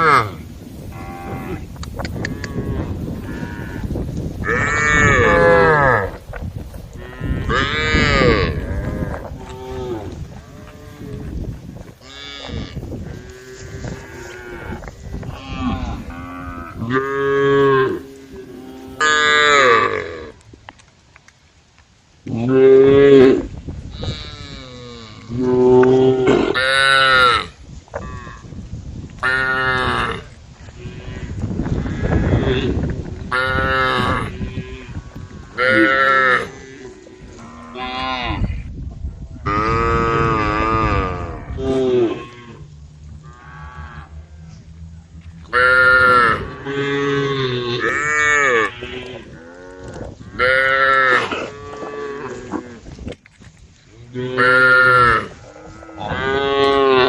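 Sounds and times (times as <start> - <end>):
cows mooing: 0.0 - 6.2, 6.9 - 20.4, 29.2 - 38.5, 39.4 - 53.0, 54.0 - 57.0
low rumble: 38.6 - 47.4.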